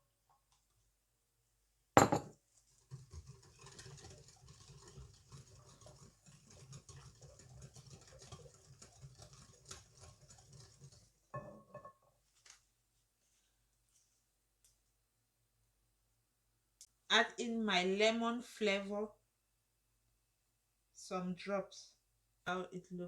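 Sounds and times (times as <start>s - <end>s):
utensil stirring batter in bowl: 2.4s - 11.8s.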